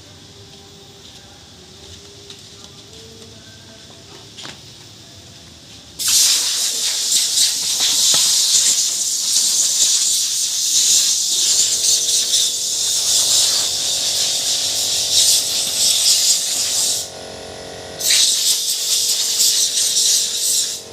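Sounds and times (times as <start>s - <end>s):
wood router hissing: 6.2s - 20.9s.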